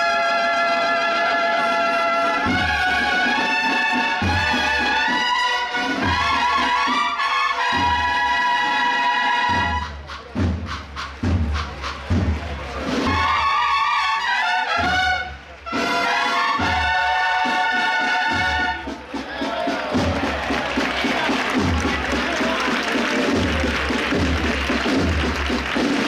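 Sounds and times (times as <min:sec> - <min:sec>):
brass band playing a march: 0:00.0 - 0:26.0
bass drum beats: 0:18.4 - 0:26.0.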